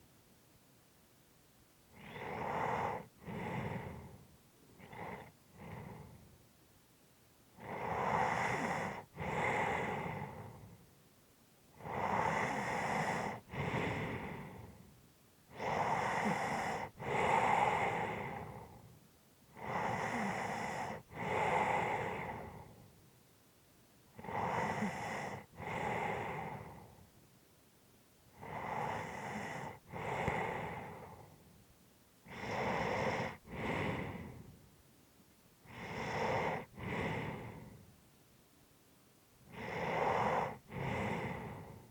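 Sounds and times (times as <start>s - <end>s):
person breathing heavily in sleep: 1.9s - 6.4s, 7.6s - 10.9s, 11.8s - 23.0s, 24.1s - 27.2s, 28.3s - 31.6s, 32.2s - 34.6s, 35.6s - 38.0s, 39.5s - 41.9s.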